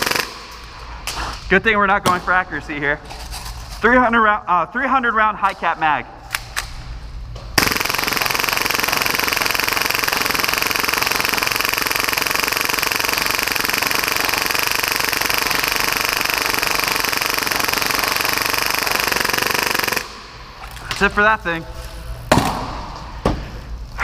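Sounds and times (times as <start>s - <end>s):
airsoft pistol full-auto burst: 0.0s - 0.5s, 7.6s - 20.2s.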